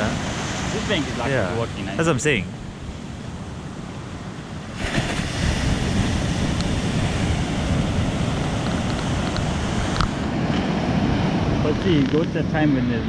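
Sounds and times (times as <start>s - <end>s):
ocean surf washing on beach: 0.0s - 13.0s
wind on microphone: 0.0s - 13.0s.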